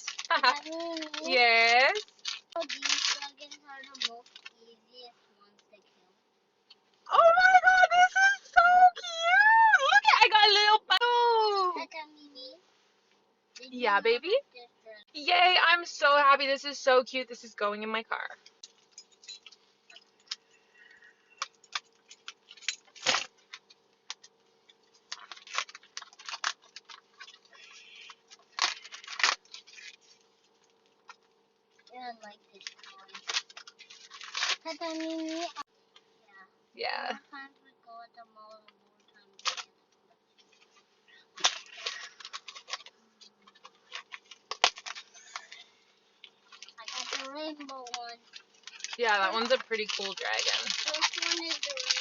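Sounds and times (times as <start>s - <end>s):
packaging crinkling: 0.0s - 4.6s, 21.4s - 31.2s, 32.5s - 35.6s, 39.4s - 39.7s, 41.4s - 45.6s, 46.2s - 52.0s.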